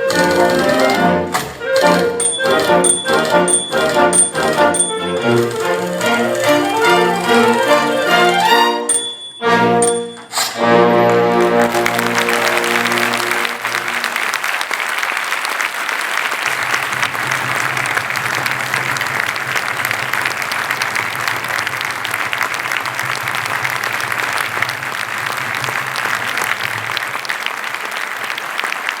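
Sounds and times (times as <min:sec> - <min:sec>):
audience applauding: 0:00.0 - 0:08.8, 0:10.7 - 0:29.0
wind band brass chord: 0:00.0 - 0:14.3.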